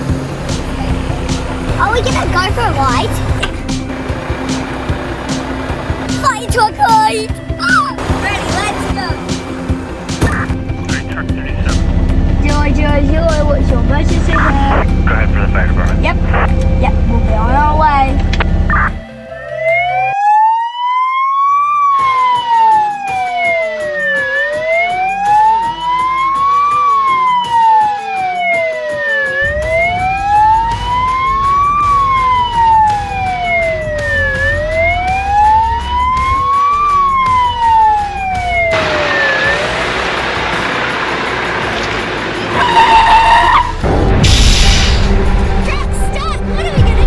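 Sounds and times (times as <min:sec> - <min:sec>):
broad rushing noise: 0:00.0 - 0:16.5
fire engine siren wailing: 0:00.0 - 0:47.0.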